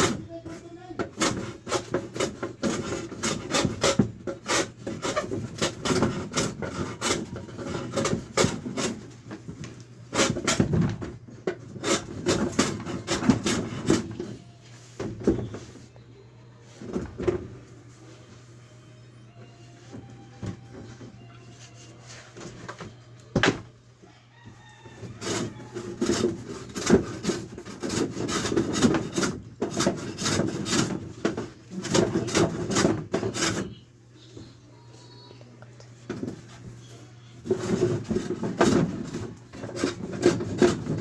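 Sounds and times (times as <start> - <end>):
knocks and scraping on wood: 0.0 - 15.9, 24.4 - 34.6, 36.0 - 41.0.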